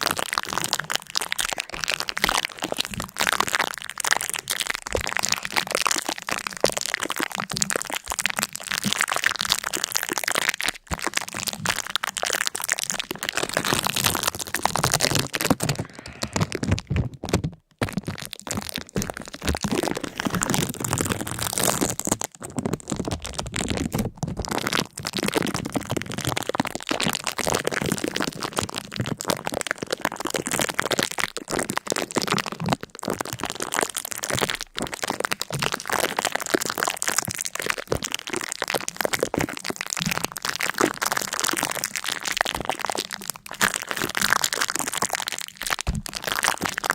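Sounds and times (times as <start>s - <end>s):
dense crackling: 11.0s - 24.3s.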